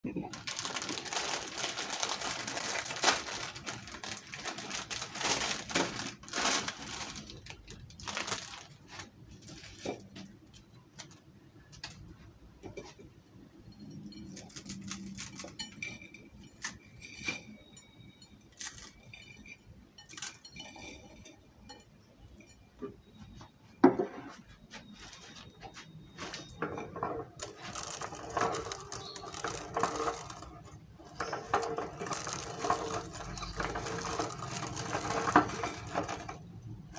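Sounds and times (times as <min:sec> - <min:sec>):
metal and dishware clinking: 0:12.6 - 0:23.2, 0:26.1 - 0:36.9.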